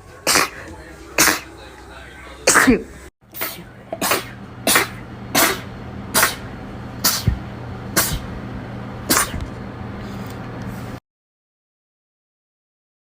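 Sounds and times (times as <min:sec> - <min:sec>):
steady low hum: 0:00.0 - 0:11.0
woman sneezing: 0:02.5 - 0:07.4, 0:08.0 - 0:08.3, 0:09.1 - 0:09.4.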